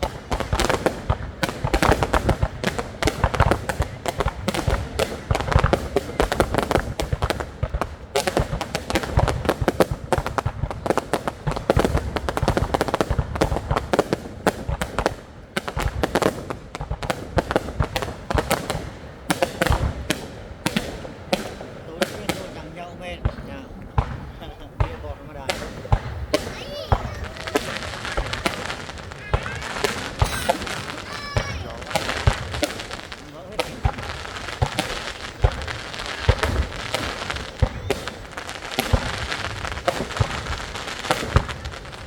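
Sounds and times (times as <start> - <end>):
fireworks bangs and crackles: 0.0 - 42.0.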